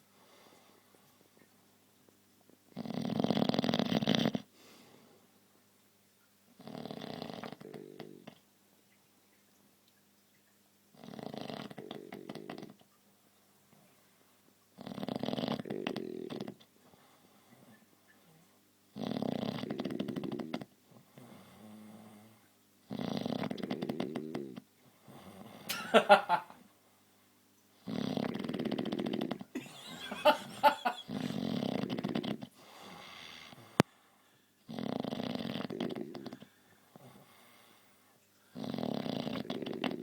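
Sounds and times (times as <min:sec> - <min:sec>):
rattling snores: 0:02.8 - 0:04.5, 0:06.6 - 0:08.4, 0:11.0 - 0:12.8, 0:14.8 - 0:16.7, 0:19.0 - 0:20.7, 0:22.9 - 0:24.6, 0:27.8 - 0:29.4, 0:31.0 - 0:33.9, 0:34.7 - 0:36.4, 0:38.6 - 0:40.0.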